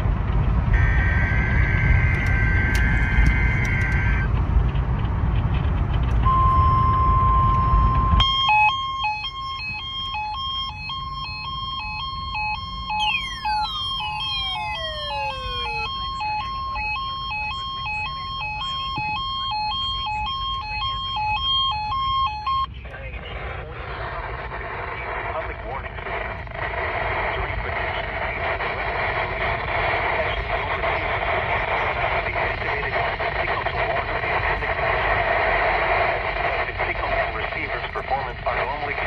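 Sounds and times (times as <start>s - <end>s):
low rumble: 0.0s - 39.0s
data burst tones: 0.7s - 4.3s, 6.2s - 22.7s
weather radios beeping: 0.7s - 4.3s, 6.1s - 39.0s
falling sweep tones: 6.3s - 22.7s.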